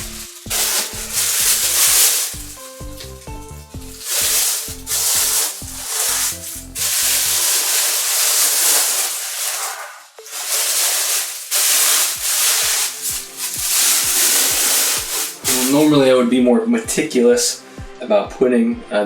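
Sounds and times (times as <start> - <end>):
background music with bass line: 0.0 - 7.6, 11.8 - 19.0
packaging rustling: 0.0 - 16.1.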